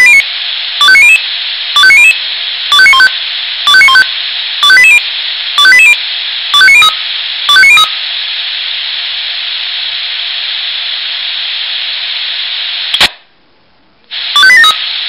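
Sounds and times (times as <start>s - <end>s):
speaker hiss: 0.0s - 13.4s, 14.0s - 15.0s
rising stepped alarm beep: 3.7s - 5.0s, 5.6s - 6.0s, 6.6s - 7.9s, 14.4s - 14.8s
sharp click: 12.9s - 13.3s.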